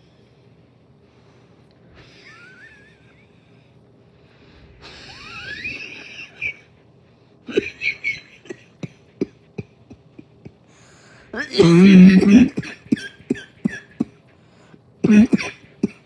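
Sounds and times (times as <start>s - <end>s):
person wheezing breaths: 3.1s - 6.6s, 7.5s - 16.0s
person coughing harshly: 7.5s - 9.4s, 11.4s - 14.1s, 15.0s - 16.0s.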